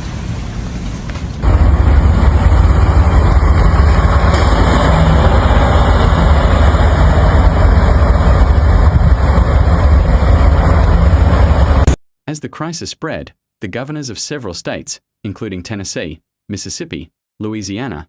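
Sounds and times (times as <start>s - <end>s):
heavy vehicle engine running: 0.0s - 12.0s.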